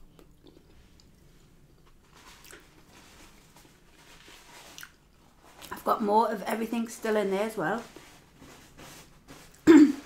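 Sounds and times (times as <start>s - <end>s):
person chewing food: 0.0s - 2.9s, 4.6s - 5.7s.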